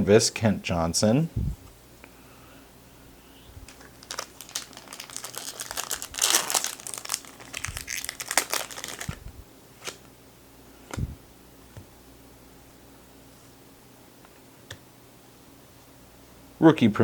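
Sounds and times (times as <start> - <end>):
foil wrapper crinkling and tearing: 3.7 - 9.2.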